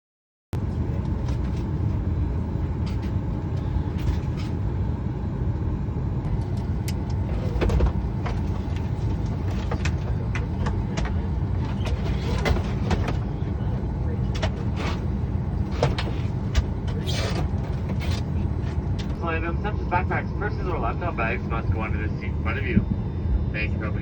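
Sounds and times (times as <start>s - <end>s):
airliner cabin rumble: 0.6s - 24.0s.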